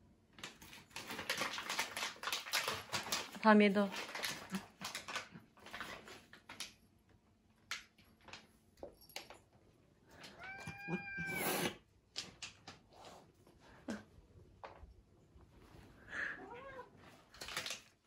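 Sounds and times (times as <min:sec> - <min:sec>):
faint clicks and rustles: 0:00.2 - 0:10.4, 0:16.8 - 0:18.0
cat meowing: 0:10.3 - 0:11.8, 0:16.2 - 0:17.0
cat hissing: 0:10.3 - 0:11.9.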